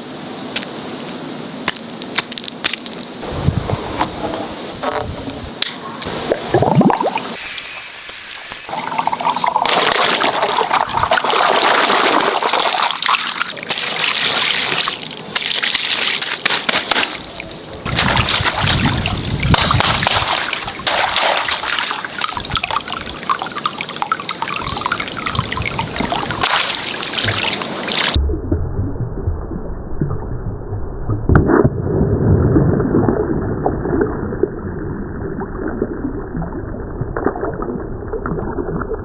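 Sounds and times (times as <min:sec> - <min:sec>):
water running and splashing: 0:06.0 - 0:28.2.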